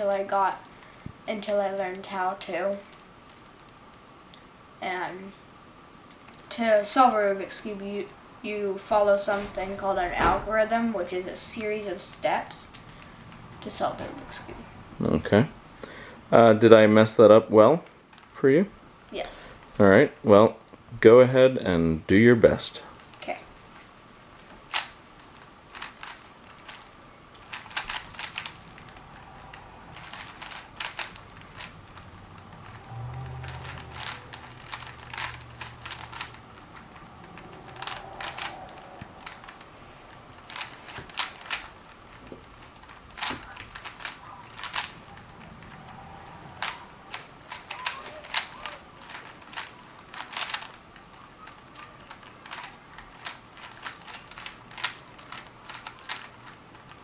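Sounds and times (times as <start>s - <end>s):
puzzle cube twisting clicks: 24.4s - 39.7s, 40.3s - 57.0s.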